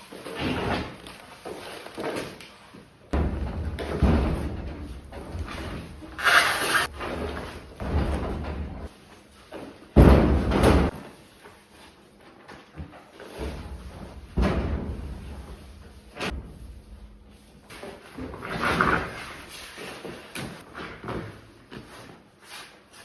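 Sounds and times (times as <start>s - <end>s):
plywood knocks and thumps: 3.2s - 5.8s
plywood scraping: 5.5s - 7.0s.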